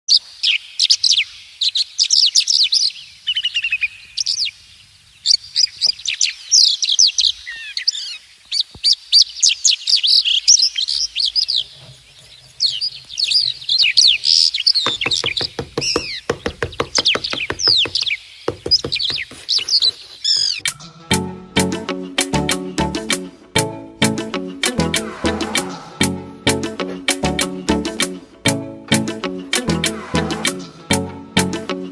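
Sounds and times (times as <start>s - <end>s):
small birds chirping: 0.4s - 20.7s
fast light tapping: 14.0s - 20.2s.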